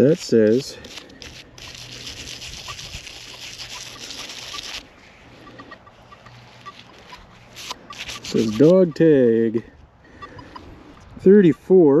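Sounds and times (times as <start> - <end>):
scratchy rubbing on metal: 0.0 - 8.8.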